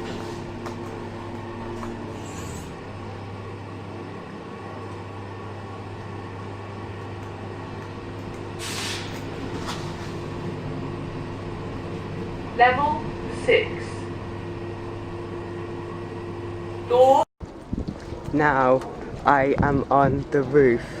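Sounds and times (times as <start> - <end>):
lift car humming: 0.0 - 17.3
short hiss: 8.6 - 9.1.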